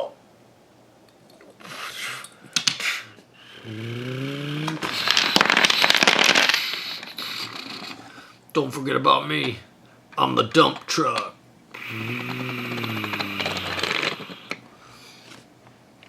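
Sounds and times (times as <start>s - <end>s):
toy blocks clattering down: 4.6s - 6.7s
toy blocks scraping: 4.6s - 8.1s.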